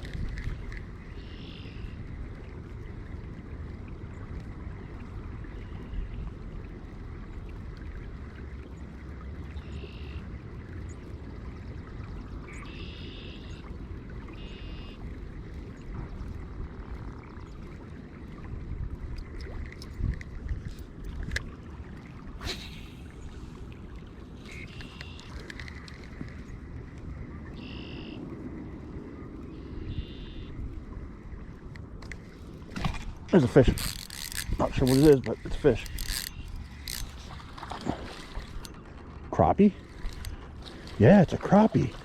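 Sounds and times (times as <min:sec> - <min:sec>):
sharp clicks: 0:32.8 - 0:37.4.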